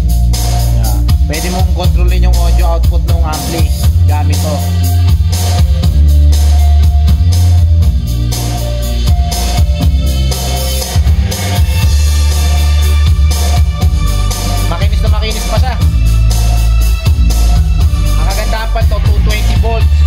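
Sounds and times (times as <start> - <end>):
song with drums and heavy bass: 0.0 - 20.0.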